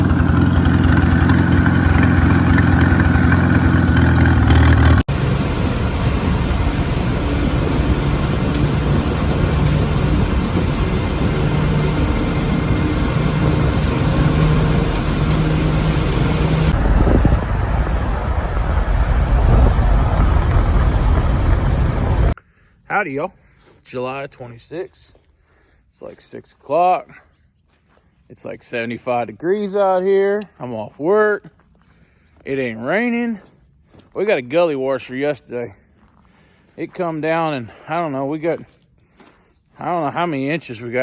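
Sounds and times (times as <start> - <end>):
tractor engine running: 0.0 - 22.4.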